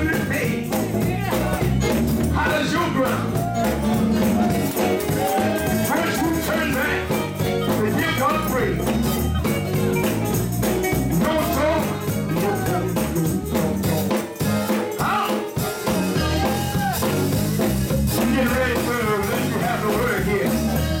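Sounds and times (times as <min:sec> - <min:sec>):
upbeat gospel band music: 0:00.0 - 0:21.0
person singing: 0:00.1 - 0:09.1, 0:11.1 - 0:13.8, 0:14.4 - 0:17.1, 0:18.2 - 0:21.0.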